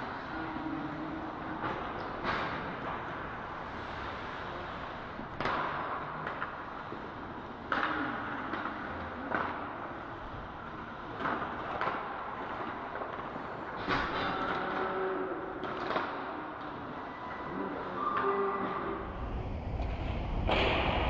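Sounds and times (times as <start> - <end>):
puck and sticks knocking boards: 5.2 - 10.0, 11.0 - 17.0.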